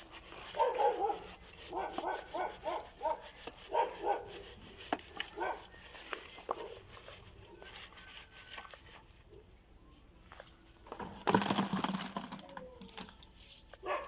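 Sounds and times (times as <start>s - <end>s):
dog barking: 0.6s - 4.3s, 5.4s - 5.6s.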